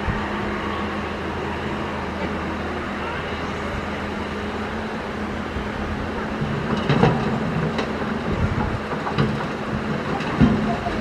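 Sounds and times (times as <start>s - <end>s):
excavator diesel engine running: 0.0s - 11.0s.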